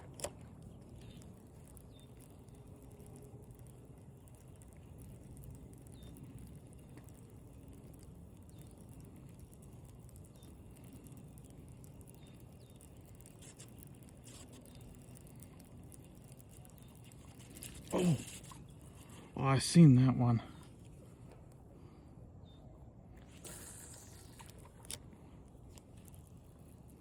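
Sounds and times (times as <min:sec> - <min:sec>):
small bird chirping: 0:00.0 - 0:19.2.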